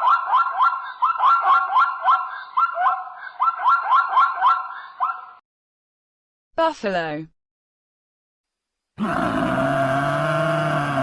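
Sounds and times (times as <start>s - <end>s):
zebra barking yelps: 0.0s - 5.4s.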